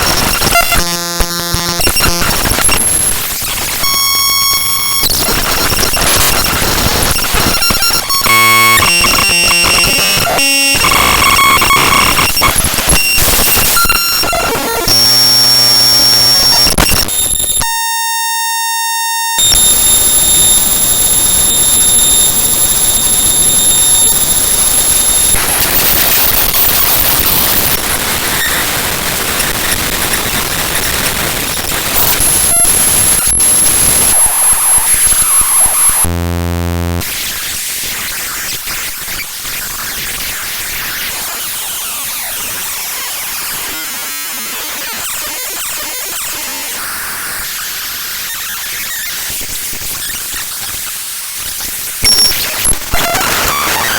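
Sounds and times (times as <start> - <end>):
buzzing tones: 0.0 - 27.7, 31.8 - 37.0
harsh digital noise and static: 0.0 - 53.9.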